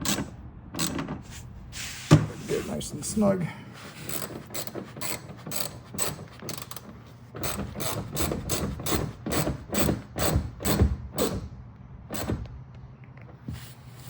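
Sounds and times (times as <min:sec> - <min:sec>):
ratchet wrench clicking: 0:04.1 - 0:06.8, 0:07.4 - 0:11.3.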